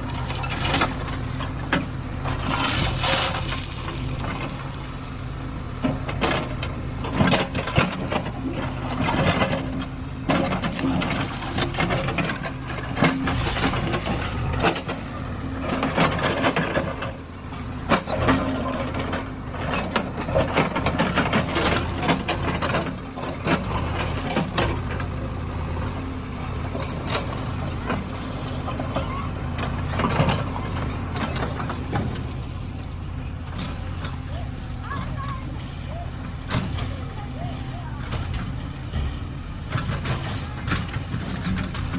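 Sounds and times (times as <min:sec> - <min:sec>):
heavy diesel engine running: 0:00.0 - 0:41.9
sharp knocks and clattering: 0:05.8 - 0:35.4.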